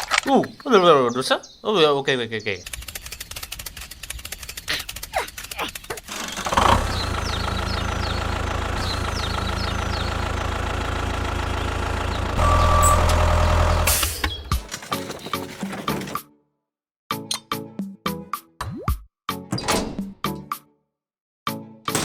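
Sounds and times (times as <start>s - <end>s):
small engine running: 2.7s - 16.2s.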